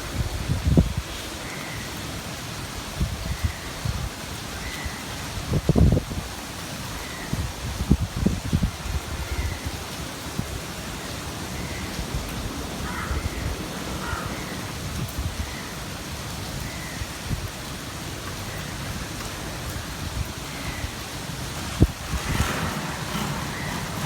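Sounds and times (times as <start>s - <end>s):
steady rain falling: 0.0s - 24.0s
low rumbling bumps: 21.4s - 24.0s.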